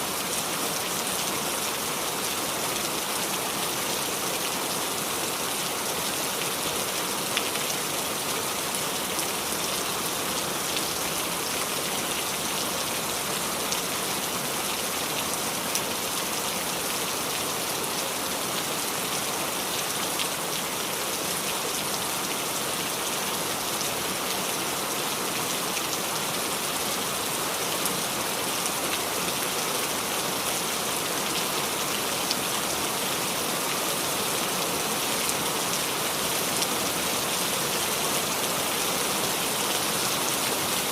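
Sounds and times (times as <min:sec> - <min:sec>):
rain falling on leaves: 0:00.0 - 0:40.9.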